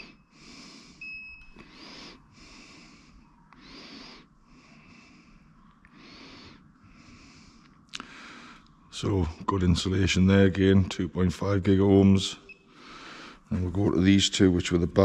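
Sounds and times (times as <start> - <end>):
close breathing: 0.0 - 8.9, 12.6 - 13.7.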